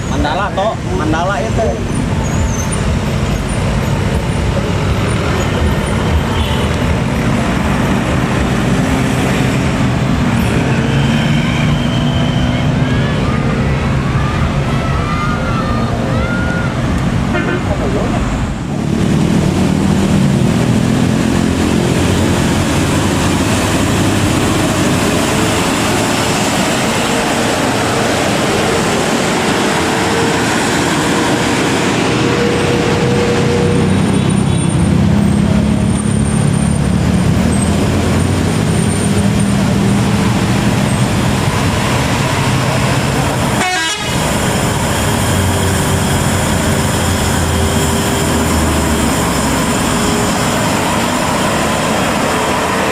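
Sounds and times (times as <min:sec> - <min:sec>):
diesel engines of buses and trucks: 0:00.0 - 0:52.9
vehicle horn toots: 0:17.3 - 0:17.8, 0:43.6 - 0:44.2.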